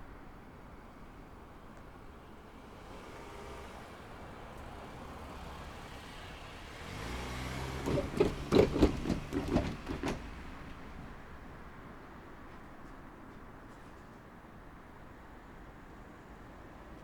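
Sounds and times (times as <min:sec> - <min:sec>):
vehicle engine approaching: 0:02.7 - 0:11.8
wheels thumping over rails: 0:06.7 - 0:11.8.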